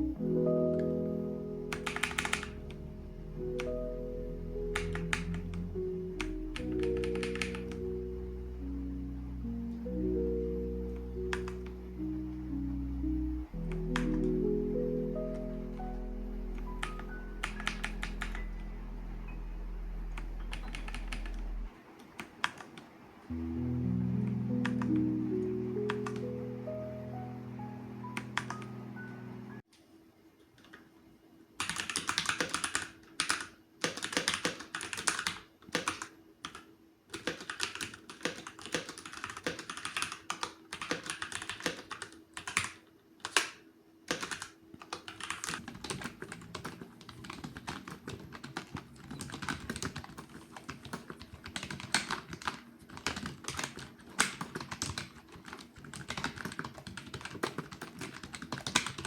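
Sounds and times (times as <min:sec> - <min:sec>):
rising musical notes: 0:00.0 - 0:21.7, 0:23.3 - 0:29.6
fast typing on a keyboard: 0:01.7 - 0:02.6, 0:06.2 - 0:07.8, 0:16.8 - 0:18.4, 0:20.5 - 0:21.4, 0:31.6 - 0:59.0.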